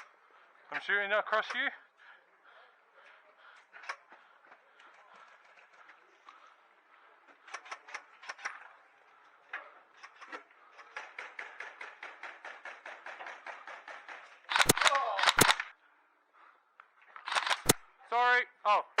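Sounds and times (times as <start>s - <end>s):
airsoft gun shots: 14.5s - 15.7s, 17.3s - 17.8s
automatic airsoft burst: 14.5s - 15.7s, 17.3s - 17.8s
person shouting: 14.9s - 15.3s.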